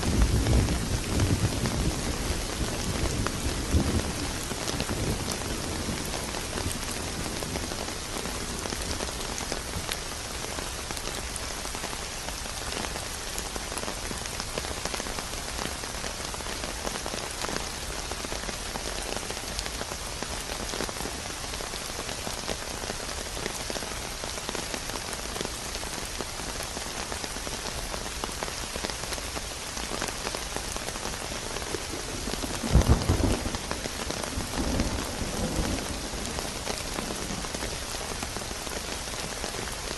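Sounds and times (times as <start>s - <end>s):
steady rain falling: 0.0s - 39.9s
thunder clap: 31.9s - 37.4s.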